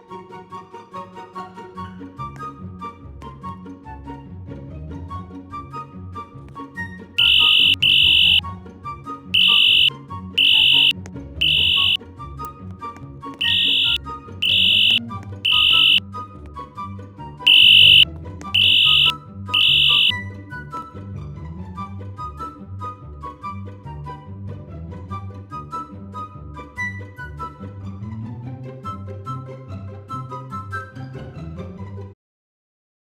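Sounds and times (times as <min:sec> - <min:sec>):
fire alarm horn blasts: 0:07.2 - 0:08.4, 0:09.4 - 0:12.0, 0:13.4 - 0:16.0, 0:17.5 - 0:18.0, 0:18.6 - 0:20.1.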